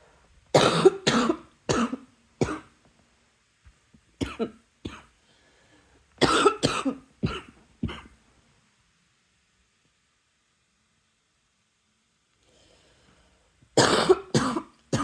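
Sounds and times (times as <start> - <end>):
person coughing: 0.6 - 2.7, 4.2 - 5.1, 6.2 - 8.2, 13.8 - 15.0.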